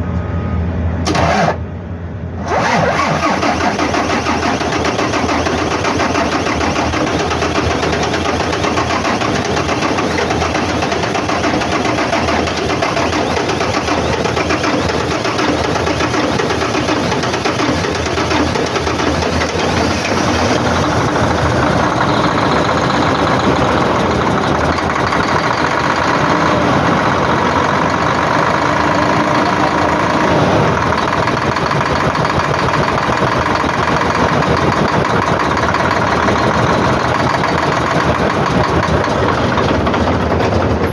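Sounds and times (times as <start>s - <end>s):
diesel truck engine running: 0.0s - 40.9s.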